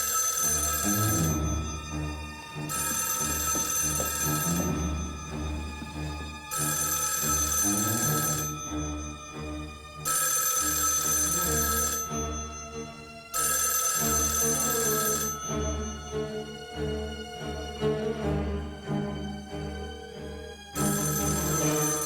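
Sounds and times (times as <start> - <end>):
bell telephone ringing: 0.0 - 5.8, 6.5 - 9.4, 10.0 - 16.2, 20.8 - 22.0
tense background music: 0.0 - 22.0.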